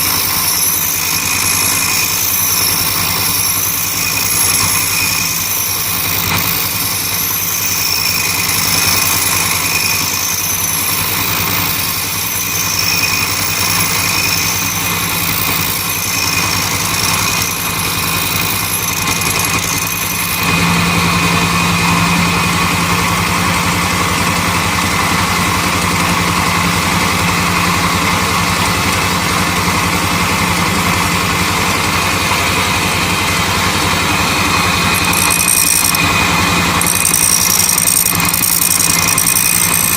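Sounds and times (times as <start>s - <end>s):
bench grinder grinding metal: 0.0s - 22.6s, 31.9s - 39.9s.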